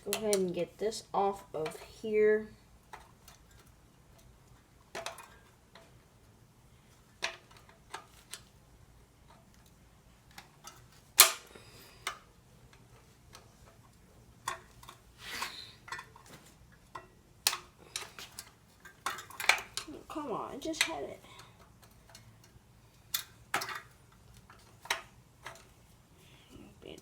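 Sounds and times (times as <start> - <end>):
hand tools clicking and clinking: 14.4 - 25.7
scraping rustle: 14.7 - 16.6.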